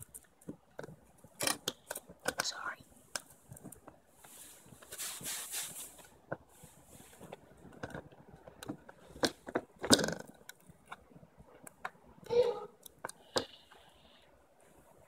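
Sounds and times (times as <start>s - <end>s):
soft hiss: 2.0s - 7.7s.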